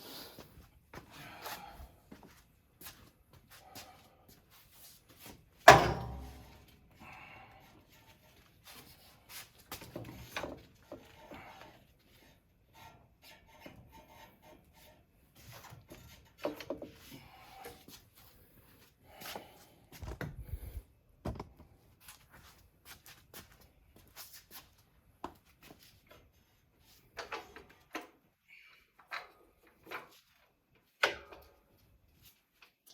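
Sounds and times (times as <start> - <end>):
clunks and clicks of metal parts: 5.6 - 6.7, 27.2 - 28.2, 28.9 - 31.6.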